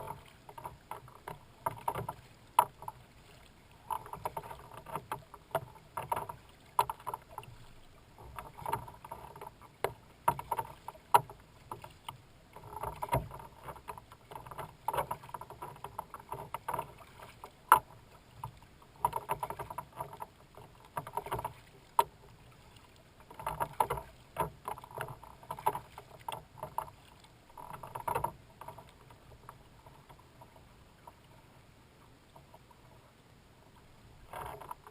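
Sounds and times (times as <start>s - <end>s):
paddle splashing water: 0.0s - 34.9s.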